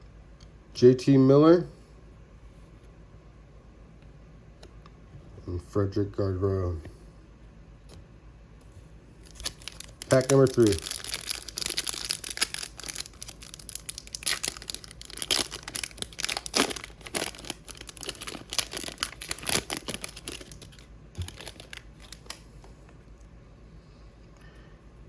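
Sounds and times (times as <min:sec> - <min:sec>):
plastic wrapper tearing and crinkling: 0:09.2 - 0:22.5.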